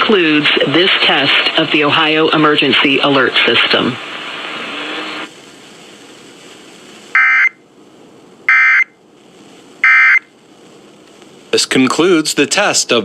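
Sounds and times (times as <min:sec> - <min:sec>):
radio hiss: 0:00.0 - 0:13.0
buzzy digital data tones: 0:07.1 - 0:07.6.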